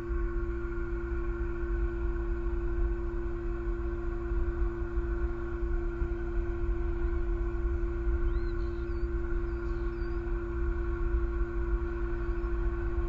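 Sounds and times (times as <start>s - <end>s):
constant multi-pitch hum: 0.0s - 13.0s
faint high bird chirps: 8.2s - 10.3s.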